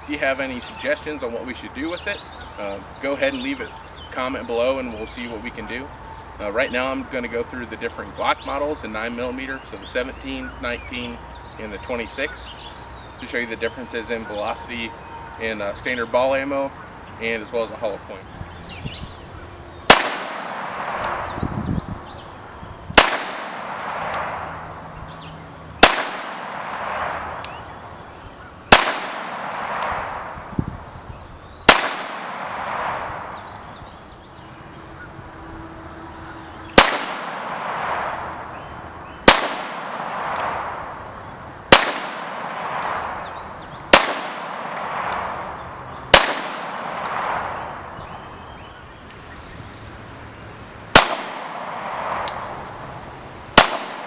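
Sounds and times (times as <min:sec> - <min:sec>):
pistol shots with echo: 0:19.9 - 0:21.5, 0:23.0 - 0:24.9, 0:25.8 - 0:27.8, 0:28.7 - 0:30.5, 0:31.7 - 0:33.6, 0:36.8 - 0:48.0, 0:50.9 - 0:52.7, 0:53.6 - 0:54.0.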